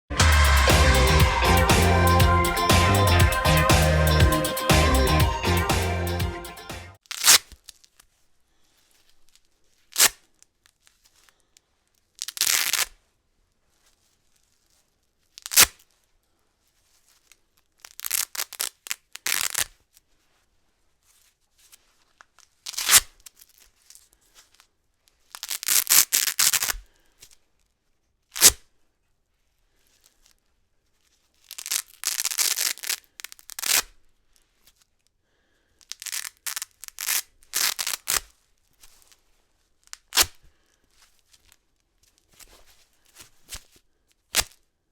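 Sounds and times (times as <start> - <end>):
velcro ripping: 7.0 - 8.1, 9.1 - 11.2, 12.1 - 13.0, 13.8 - 16.0, 16.9 - 20.1, 21.2 - 28.7, 31.0 - 34.9, 35.8 - 44.7.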